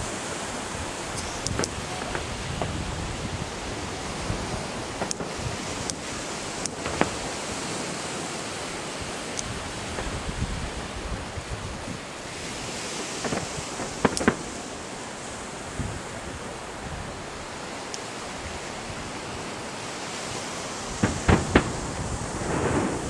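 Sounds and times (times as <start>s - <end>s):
wind noise on microphone: 0.0s - 23.0s
faint firework pops and crackles: 1.1s - 14.8s, 20.3s - 23.0s.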